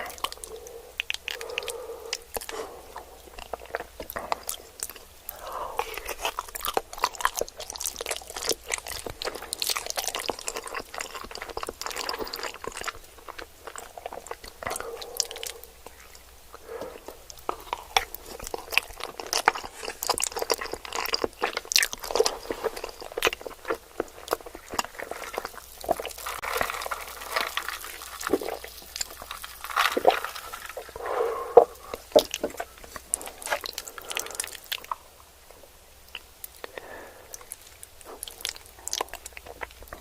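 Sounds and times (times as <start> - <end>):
person chewing: 0.0 - 35.2, 36.0 - 40.0.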